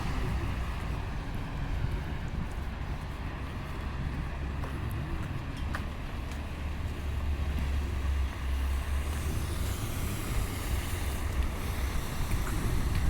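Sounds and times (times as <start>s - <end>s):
low traffic rumble: 0.0s - 13.0s
vehicle tyre hiss: 6.8s - 13.0s.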